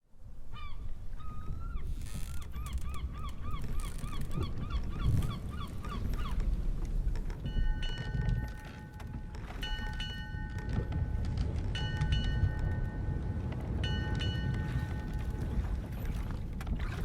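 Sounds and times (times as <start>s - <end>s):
sea and wind rumble: 0.1s - 17.0s
seagulls calling: 0.5s - 6.7s.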